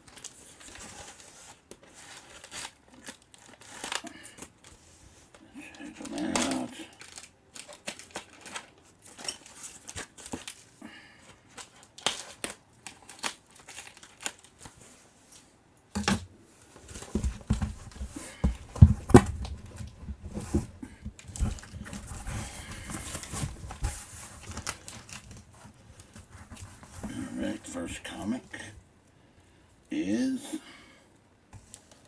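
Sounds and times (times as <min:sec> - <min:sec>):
packaging crinkling and tearing: 0:00.0 - 0:14.9, 0:16.9 - 0:27.3
heavy thumps and rustling: 0:16.8 - 0:27.3.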